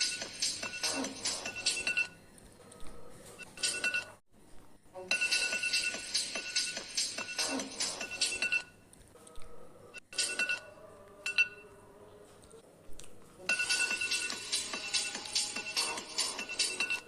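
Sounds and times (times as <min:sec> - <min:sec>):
jingly alarm ringtone: 0:00.0 - 0:02.2, 0:03.5 - 0:04.2, 0:05.1 - 0:08.8, 0:10.1 - 0:11.8, 0:13.5 - 0:17.0.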